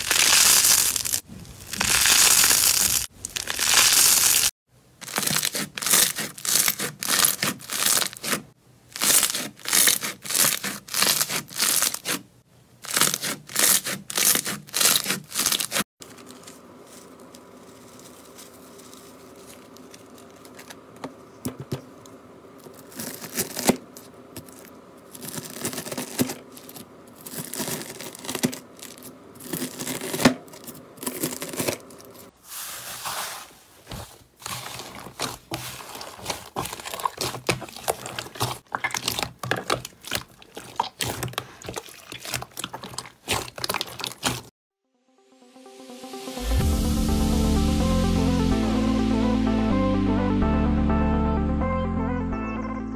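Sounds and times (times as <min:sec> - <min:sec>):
hands squishing slime: 0:34.0 - 0:44.5.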